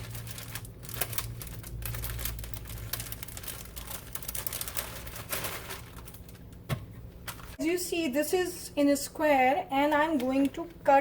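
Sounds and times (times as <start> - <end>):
pastry sheets and plastic crinkling: 0.0 - 7.6
low steady hum: 0.0 - 11.0.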